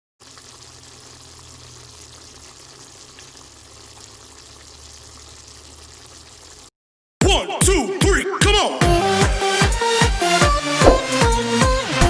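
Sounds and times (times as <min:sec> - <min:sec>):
food sizzling in a pan: 0:00.2 - 0:06.7.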